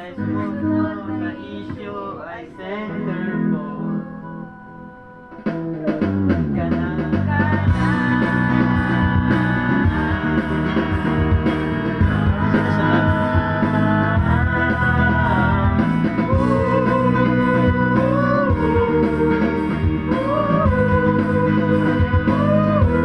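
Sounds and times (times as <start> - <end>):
guitar-led band music: 0.0 - 23.0
sliding melody line: 0.1 - 23.0
steady drum beat: 5.4 - 23.0.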